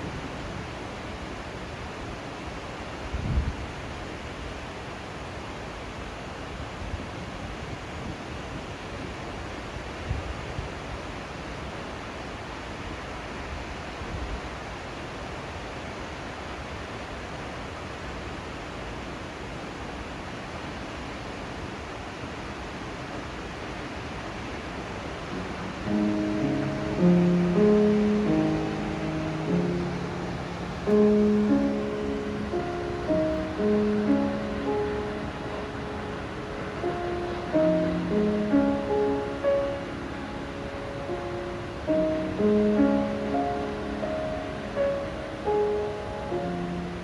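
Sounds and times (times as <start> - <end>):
waterfall rushing: 21.7 - 47.0.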